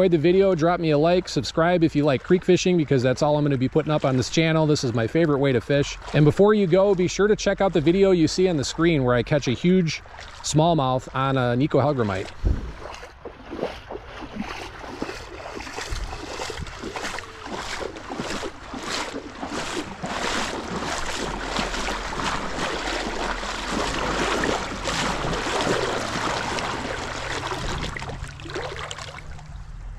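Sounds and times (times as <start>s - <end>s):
legs splashing through water: 0.0s - 29.9s
running stream: 0.0s - 29.9s.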